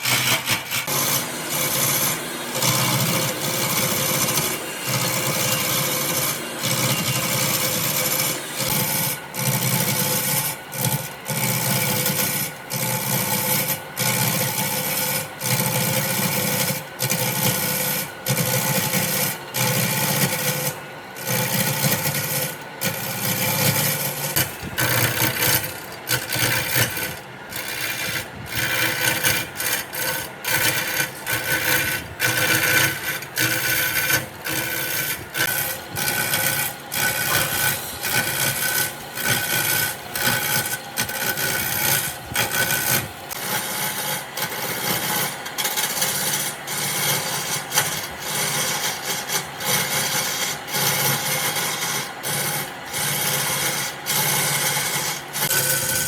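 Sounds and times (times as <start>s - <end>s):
hand tool rubbing over wood: 26.5s - 44.1s.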